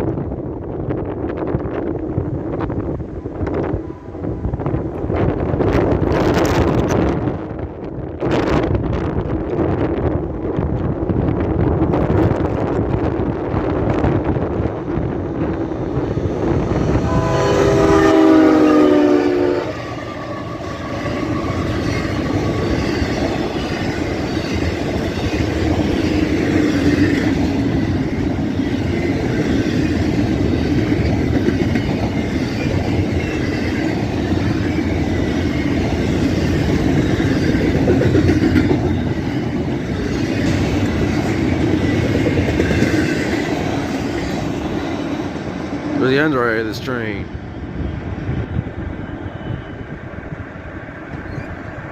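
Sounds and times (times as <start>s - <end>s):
train wheels rumbling on rails: 0.0s - 51.9s
locomotive air horn: 17.0s - 21.7s.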